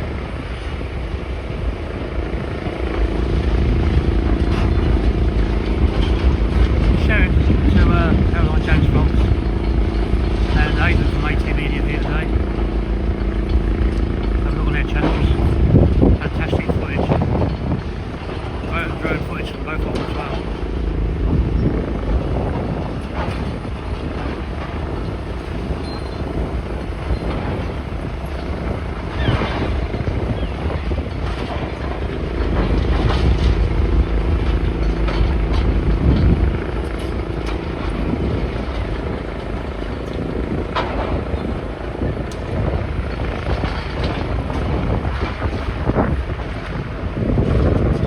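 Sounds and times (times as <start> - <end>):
demolition machinery engine running: 0.0 - 48.0
knocks and clatter: 2.6 - 48.0.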